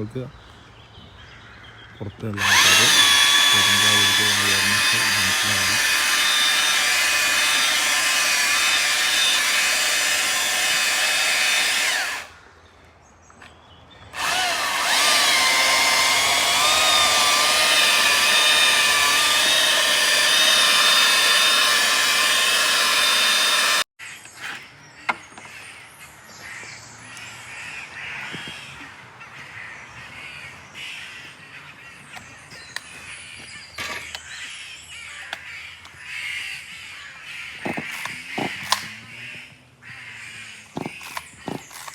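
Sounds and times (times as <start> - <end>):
tree-cutting tool running: 2.3 - 12.4, 14.1 - 23.9, 37.6 - 39.2, 40.8 - 41.9
crows cawing: 26.4 - 32.2, 34.2 - 41.6.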